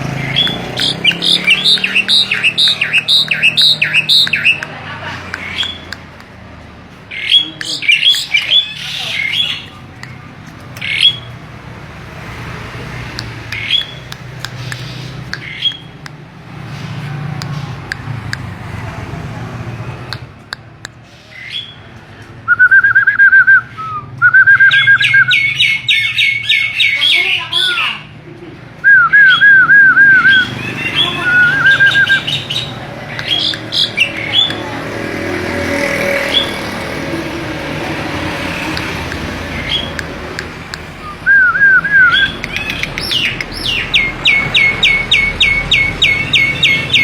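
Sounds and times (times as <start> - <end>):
high bird chirps: 0.0 - 4.7, 5.3 - 6.1, 7.1 - 11.4, 13.2 - 16.2, 22.6 - 28.0, 28.9 - 36.6, 38.2 - 47.0
starling harsh calls: 0.0 - 6.3, 7.0 - 18.2, 24.7 - 28.2, 29.2 - 47.0
sharp clicks: 0.2 - 6.4, 12.3 - 16.3, 17.3 - 18.6, 20.1 - 21.0, 32.0 - 34.7, 38.3 - 41.0, 42.0 - 44.1.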